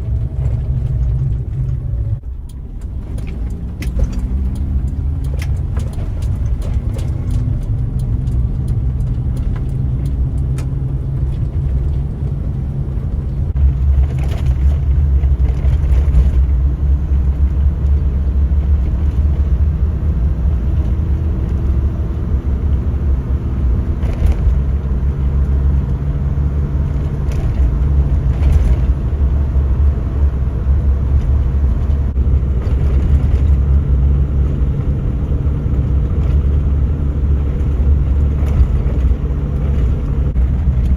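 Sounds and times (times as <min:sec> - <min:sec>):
car engine rumble: 0:00.0 - 0:40.9
road noise: 0:00.0 - 0:40.9.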